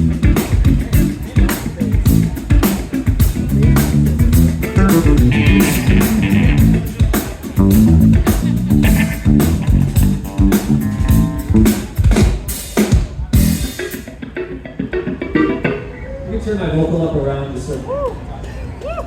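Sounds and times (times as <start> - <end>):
electric guitar: 0.0 - 12.1, 13.3 - 16.3
drum kit: 0.0 - 15.9
bass guitar: 0.0 - 16.2.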